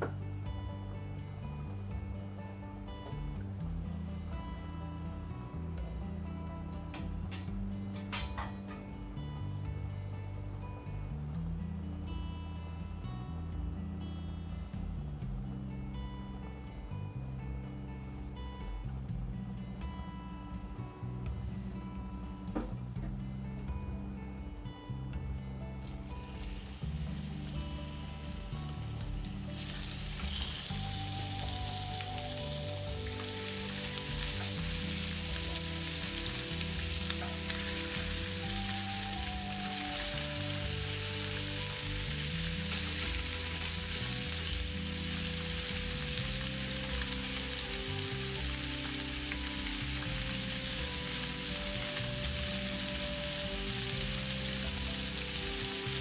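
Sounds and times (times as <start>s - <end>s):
food sizzling in a pan: 25.8s - 56.0s.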